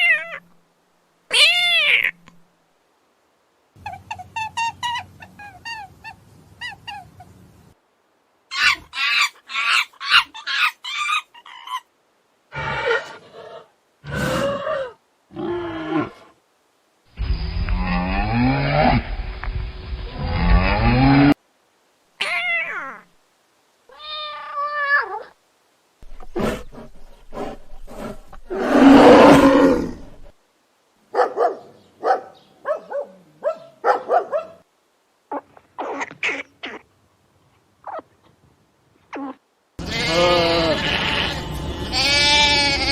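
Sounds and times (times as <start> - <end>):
animal calls: 3.8 - 7.4, 8.5 - 11.9.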